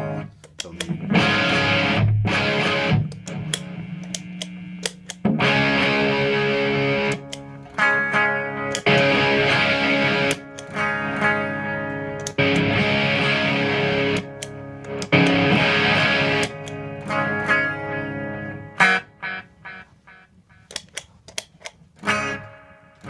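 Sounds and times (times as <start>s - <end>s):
electric guitar chords ringing: 0.0s - 20.7s, 22.0s - 23.0s.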